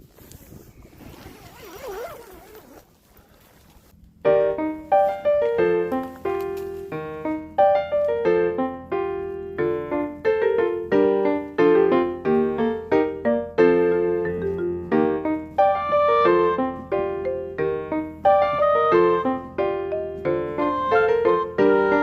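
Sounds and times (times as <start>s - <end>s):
piano playing chords: 4.2s - 22.0s.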